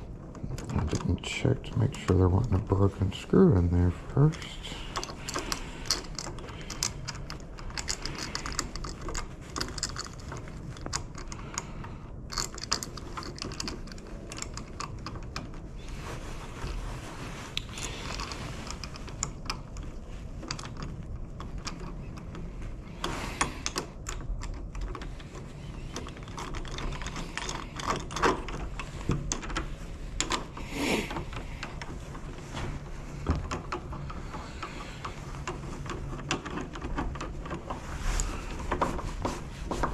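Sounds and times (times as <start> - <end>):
small metal clicks and rattling: 4.2 - 15.8, 17.6 - 39.0.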